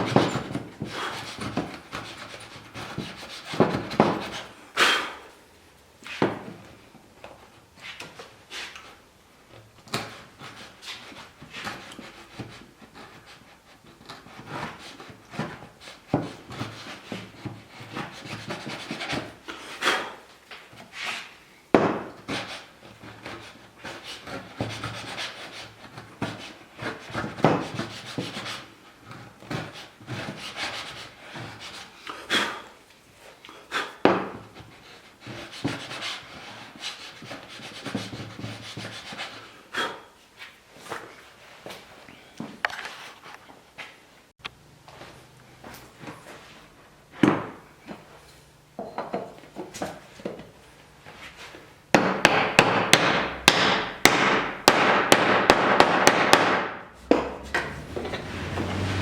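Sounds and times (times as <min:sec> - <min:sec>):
hand tool shaving wood: 0:00.0 - 0:04.5, 0:22.2 - 0:32.5, 0:57.0 - 0:59.0.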